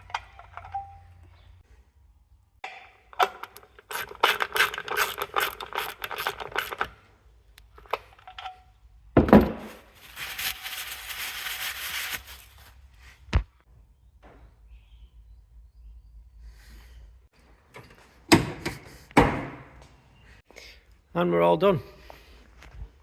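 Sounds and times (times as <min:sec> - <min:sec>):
rapid clicks and rattles: 0:03.2 - 0:07.0.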